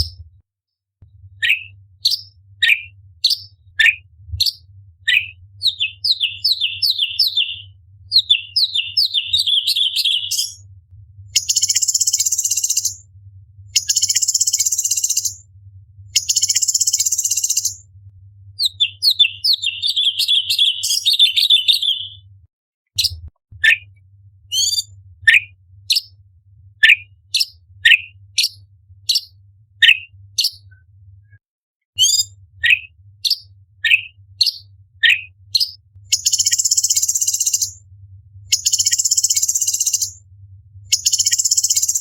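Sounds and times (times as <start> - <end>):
bird singing: 1.4 - 10.6, 11.4 - 13.0, 13.8 - 15.4, 16.2 - 17.8, 18.6 - 22.3, 24.5 - 26.1, 26.8 - 30.8, 32.0 - 37.8, 38.5 - 40.2, 40.9 - 42.0.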